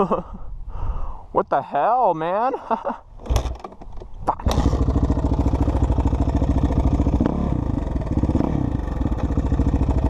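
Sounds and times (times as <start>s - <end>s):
dirt bike engine running: 4.4s - 10.0s.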